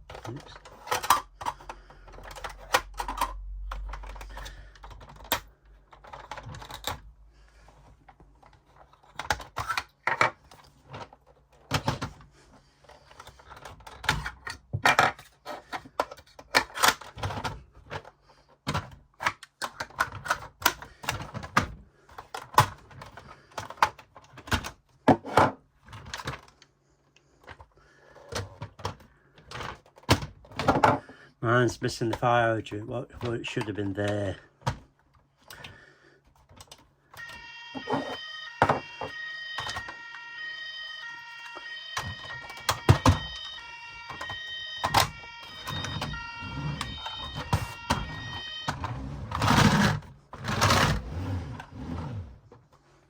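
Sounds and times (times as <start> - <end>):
plastic toy parts clicking: 0.0 - 7.0.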